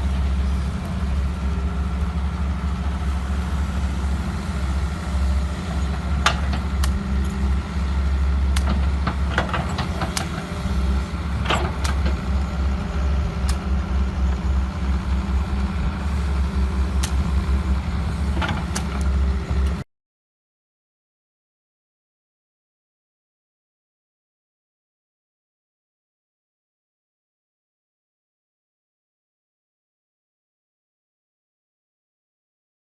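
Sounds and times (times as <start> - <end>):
excavator diesel engine running: 0.0 - 19.8
sharp cracks and knocks: 8.5 - 10.4.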